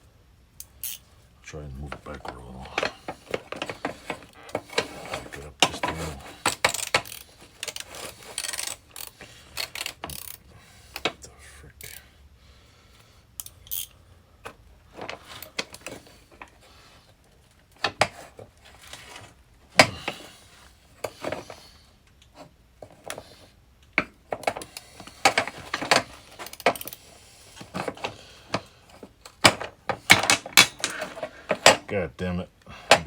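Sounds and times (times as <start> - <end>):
metal hand tools clinking: 0.6 - 1.1.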